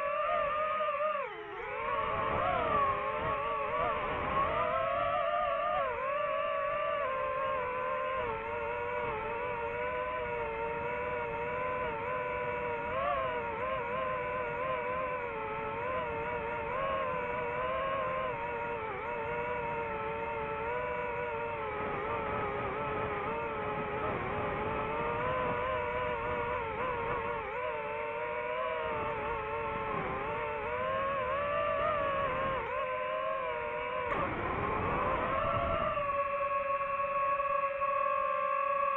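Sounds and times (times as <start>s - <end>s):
drone propellers whining: 0.0s - 38.9s.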